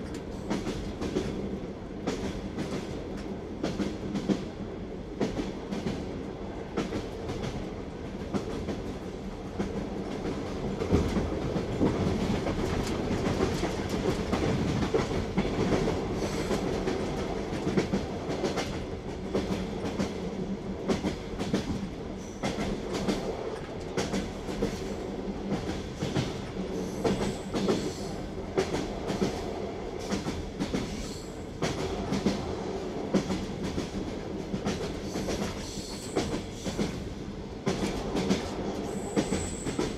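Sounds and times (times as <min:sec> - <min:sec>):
train wheels clattering: 0:25.5 - 0:29.4, 0:33.1 - 0:39.9.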